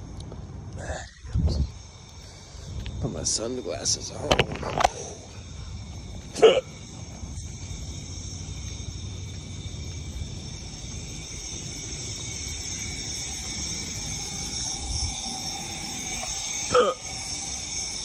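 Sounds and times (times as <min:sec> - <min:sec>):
insects chirring: 0:00.0 - 0:18.0
low outdoor rumble: 0:00.0 - 0:18.0.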